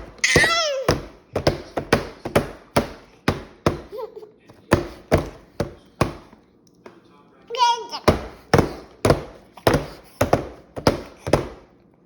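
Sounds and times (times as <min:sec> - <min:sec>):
sharp knocks on hard surface: 0:08.0 - 0:11.6.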